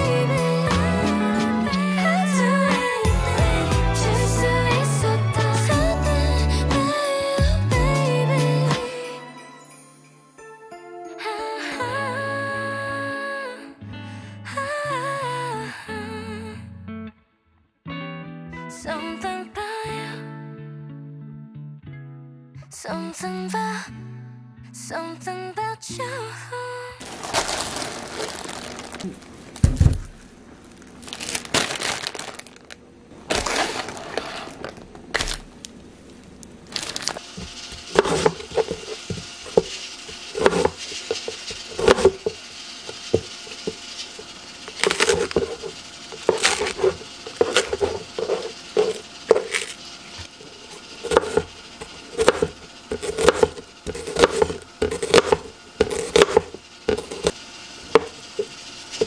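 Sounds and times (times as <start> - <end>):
crinkling rustling: 27.0 - 39.2.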